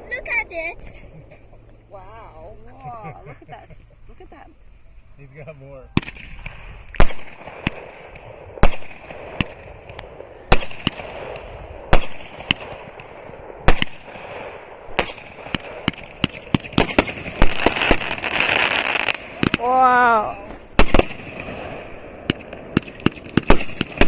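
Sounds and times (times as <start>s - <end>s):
fireworks crackling hiss: 5.3s - 19.7s
fireworks bangs: 6.0s - 24.0s.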